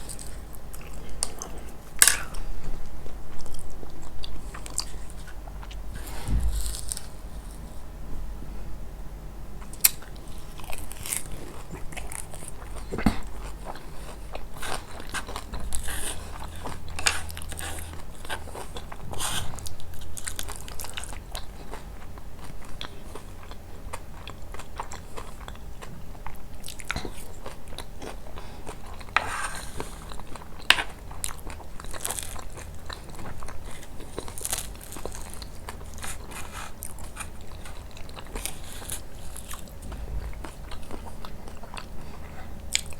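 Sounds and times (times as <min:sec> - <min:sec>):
crunching and biting pastry: 0:09.6 - 0:42.9
wet chewing: 0:09.6 - 0:42.9.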